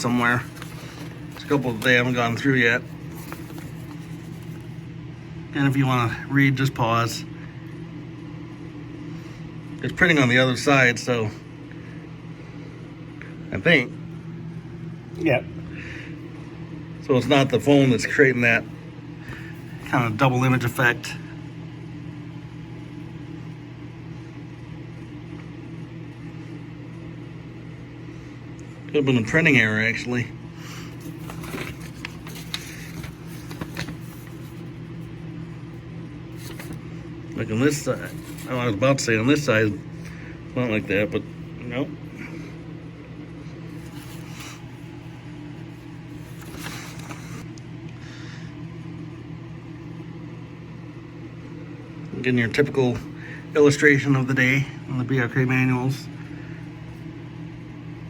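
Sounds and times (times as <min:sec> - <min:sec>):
paper rustling: 0:00.0 - 0:04.8, 0:19.3 - 0:20.8, 0:30.7 - 0:40.2, 0:43.7 - 0:47.4
steady low hum: 0:00.0 - 0:58.0.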